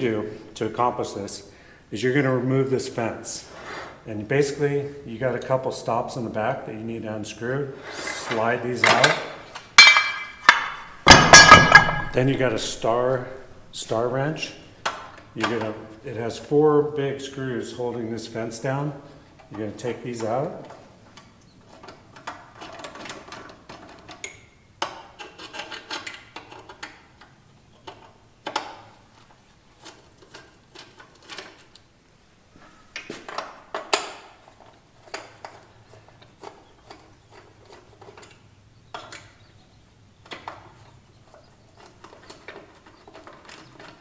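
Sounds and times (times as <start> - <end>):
hand tools clicking on metal: 8.3 - 15.8
sharp clack: 8.8 - 14.0.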